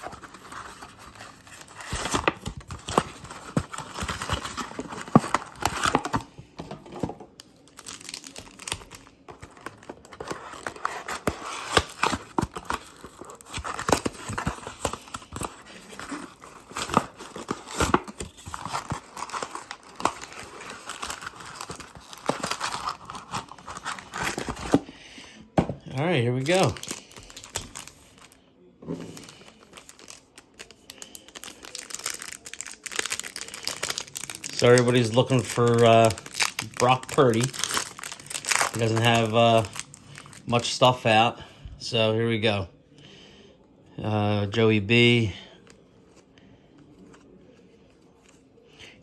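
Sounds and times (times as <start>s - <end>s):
plastic wrapping tearing and crinkling: 0.0s - 6.3s, 7.3s - 24.9s, 25.9s - 28.4s, 29.1s - 40.7s.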